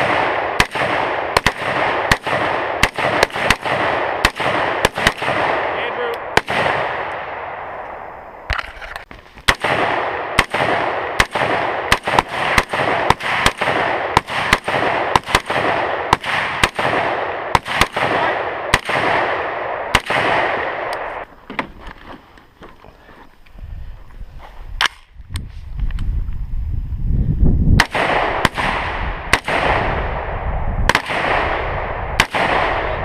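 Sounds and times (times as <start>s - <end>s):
rifle shots echoing: 0.0s - 8.6s, 9.4s - 21.3s, 27.8s - 33.0s.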